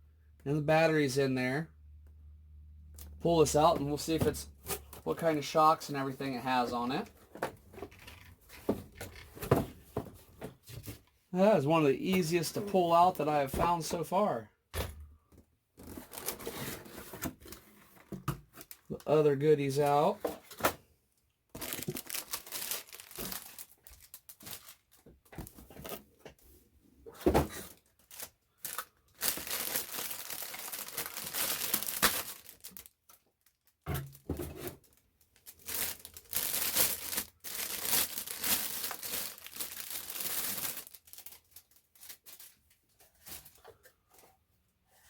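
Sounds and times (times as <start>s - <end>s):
packaging crinkling and tearing: 15.8s - 16.5s, 21.6s - 25.1s, 27.7s - 33.8s, 34.8s - 42.7s.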